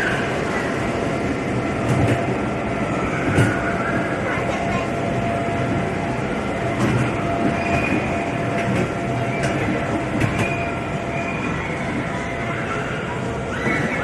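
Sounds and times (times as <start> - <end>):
kiddie-ride train rumbling: 0.0 - 14.0
wheels clicking and knocking: 1.8 - 2.4, 6.6 - 14.0.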